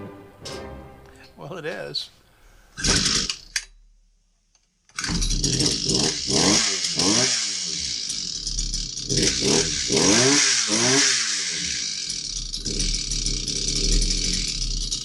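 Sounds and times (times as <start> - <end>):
small gas engine revving: 2.8 - 3.5, 4.9 - 15.0.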